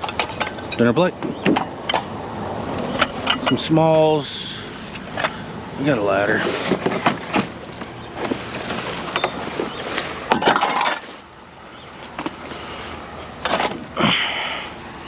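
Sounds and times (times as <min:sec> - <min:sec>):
scrap items knocking and clattering: 0:00.0 - 0:02.1, 0:06.2 - 0:11.2.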